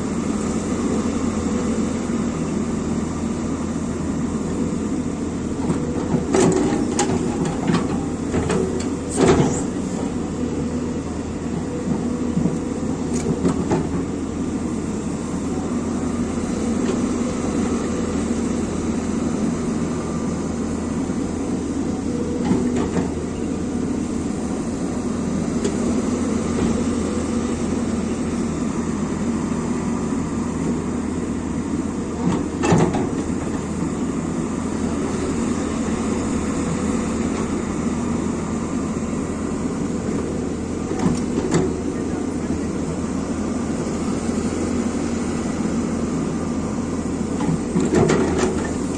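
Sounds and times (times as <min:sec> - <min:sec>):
excavator engine and hydraulics: 0:00.0 - 0:48.9
sharp knocks from excavator: 0:05.6 - 0:10.0, 0:32.2 - 0:33.6, 0:40.9 - 0:42.0, 0:47.4 - 0:48.9.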